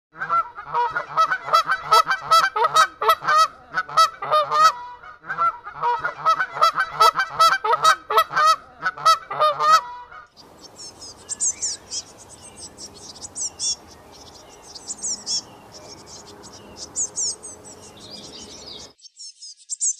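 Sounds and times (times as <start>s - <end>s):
flock of large birds honking: 0.2s - 18.9s
small birds chirping: 10.3s - 19.9s.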